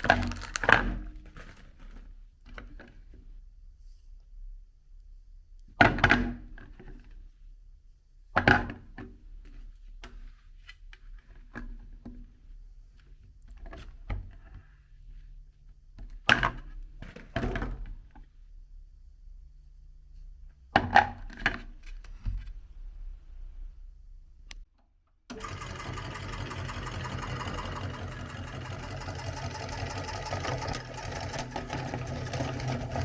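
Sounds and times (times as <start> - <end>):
soap knocking against grinder: 25.5 - 33.0.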